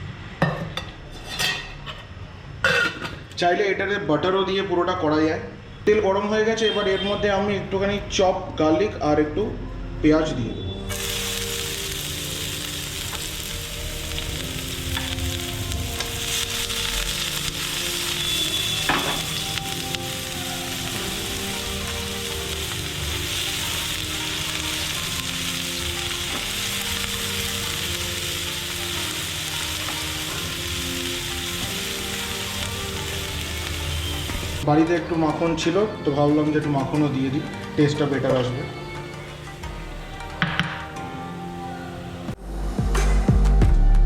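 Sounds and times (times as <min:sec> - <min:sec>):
soft background music: 0:07.3 - 0:44.0
garlic and onion sizzling in oil: 0:10.9 - 0:34.7.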